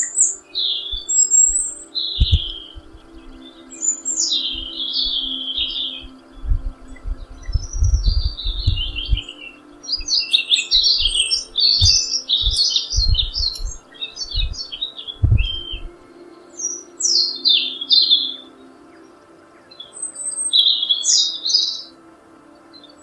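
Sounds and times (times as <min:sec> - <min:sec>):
songbirds chirping and twittering: 0:00.0 - 0:23.0
low rumbles: 0:06.4 - 0:09.3.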